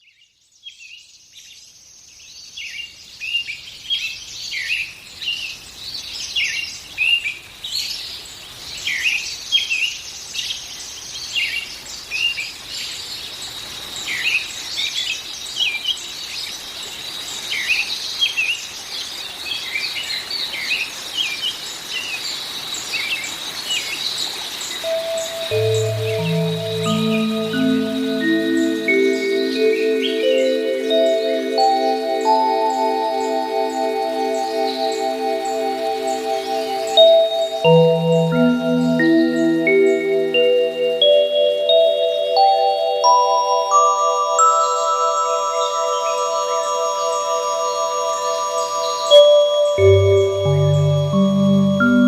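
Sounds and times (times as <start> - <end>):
songbirds chirping: 0.2 - 52.0
thin high tone: 24.9 - 52.0.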